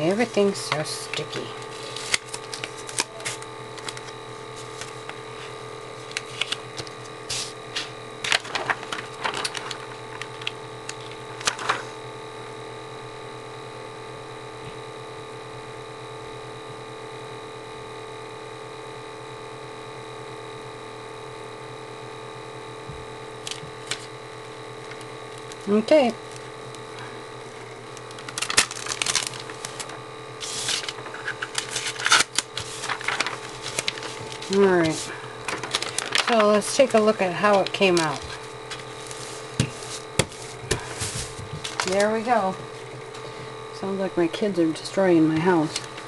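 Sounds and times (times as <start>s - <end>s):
steady electrical hum: 0.0s - 46.0s
vinyl tape peeling crackles: 0.1s - 12.0s, 23.4s - 43.3s, 45.6s - 46.0s.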